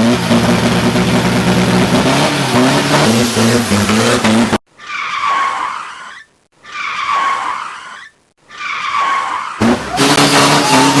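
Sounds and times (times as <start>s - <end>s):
car engine revving: 0.0s - 4.6s, 9.6s - 11.0s
tyre screech: 4.8s - 11.0s.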